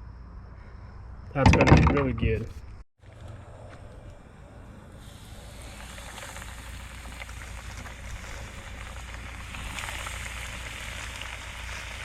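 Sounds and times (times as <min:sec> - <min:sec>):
oil sizzling and crackling: 0:04.9 - 0:12.0.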